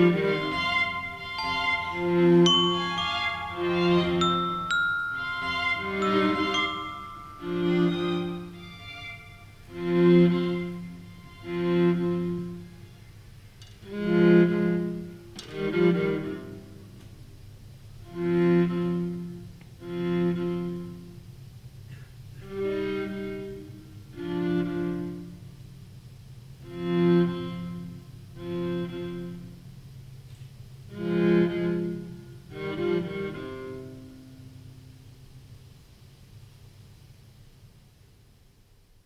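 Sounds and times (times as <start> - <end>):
bowed strings playing chords: 0.0 - 11.1.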